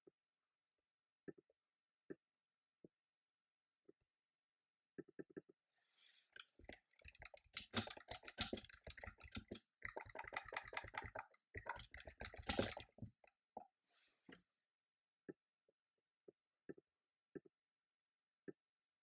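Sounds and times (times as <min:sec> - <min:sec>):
keyboard typing: 0:06.4 - 0:13.3.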